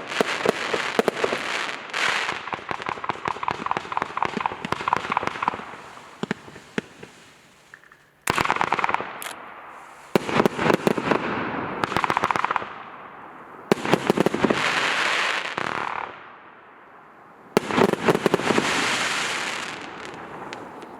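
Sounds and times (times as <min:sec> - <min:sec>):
hissing crackle: 0:00.0 - 0:10.9, 0:18.0 - 0:20.9.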